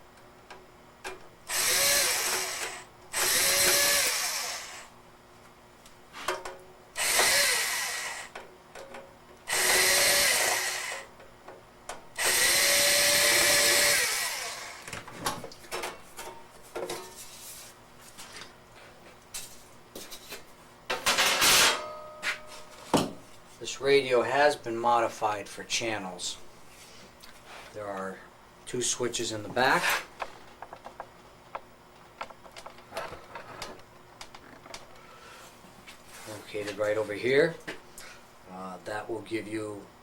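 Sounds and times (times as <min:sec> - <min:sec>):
power drill driver whining: 0:01.5 - 0:04.9, 0:07.0 - 0:08.4, 0:09.5 - 0:11.1, 0:12.2 - 0:15.0.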